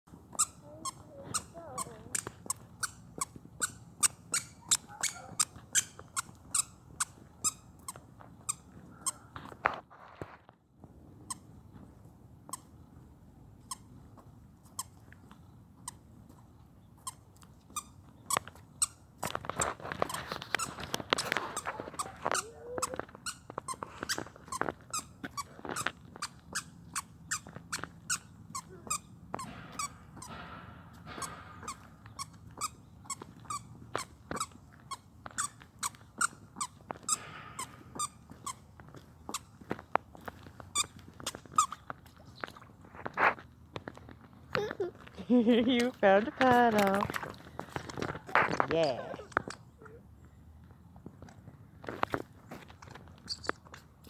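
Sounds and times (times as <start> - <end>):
squeaky shoes squeaking: 0.2 - 9.5, 11.2 - 11.5, 13.6 - 14.0, 14.6 - 15.0, 16.8 - 42.7, 52.6 - 53.9.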